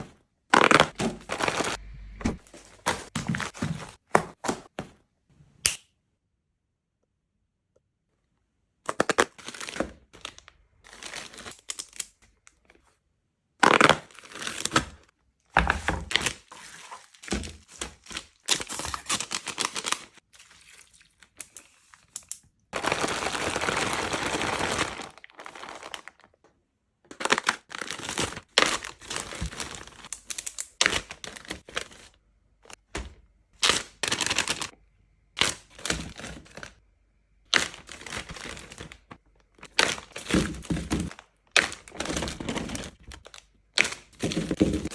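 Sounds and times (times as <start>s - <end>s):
plastic packaging crinkling: 0.6s - 1.8s, 16.1s - 20.2s, 22.8s - 26.4s, 27.1s - 32.8s, 33.6s - 34.7s, 37.5s - 44.9s.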